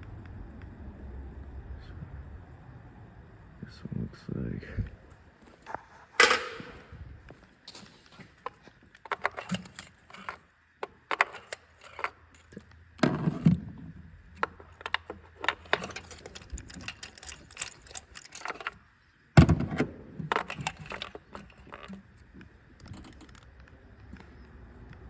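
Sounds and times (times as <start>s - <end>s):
hand tools clinking: 6.2s - 6.9s, 9.1s - 12.6s, 14.4s - 18.9s.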